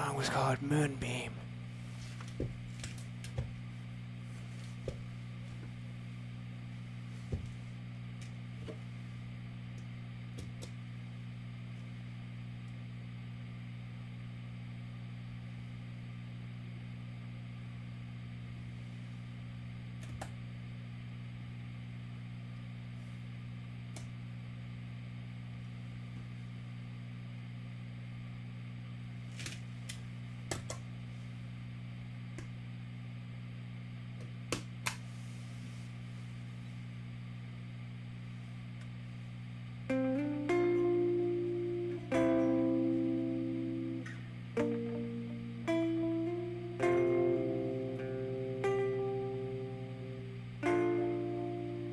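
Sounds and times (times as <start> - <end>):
steady low hum: 0.0 - 51.9.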